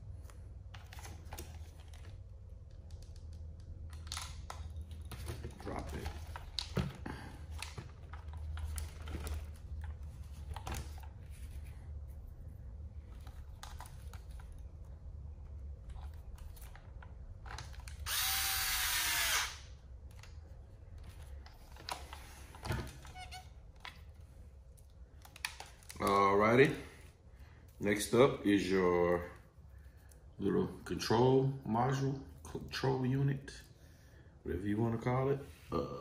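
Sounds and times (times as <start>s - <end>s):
electric screwdriver whine: 18.0s - 19.6s.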